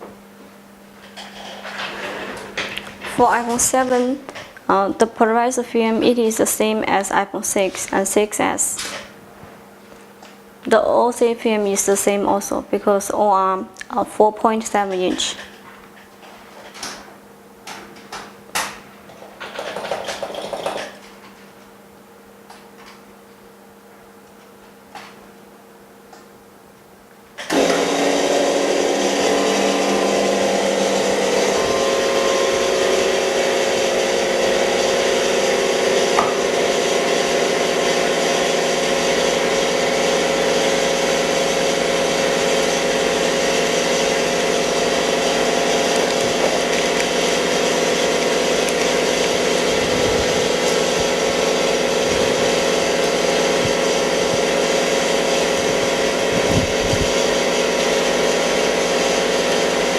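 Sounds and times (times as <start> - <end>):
electric machine humming: 27.3 - 59.9.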